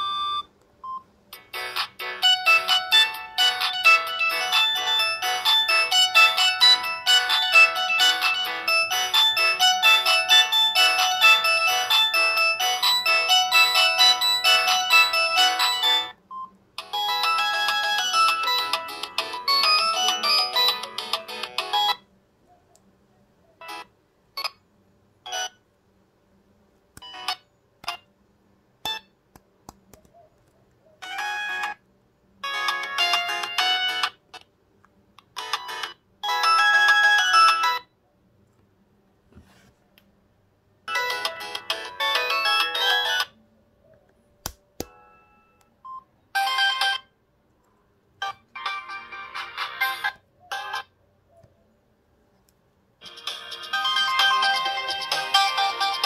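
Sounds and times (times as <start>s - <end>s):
phone ringtone: 0.0s - 22.0s, 25.3s - 25.6s, 31.0s - 31.8s, 32.4s - 34.2s, 35.4s - 37.9s, 40.9s - 43.4s, 44.9s - 47.1s, 48.2s - 50.9s, 53.0s - 56.0s.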